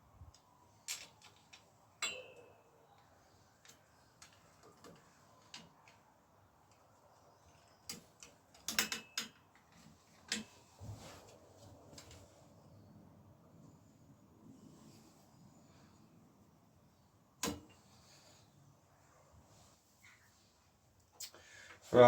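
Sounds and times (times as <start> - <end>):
light metallic clicks from tools: 0.2 - 12.3.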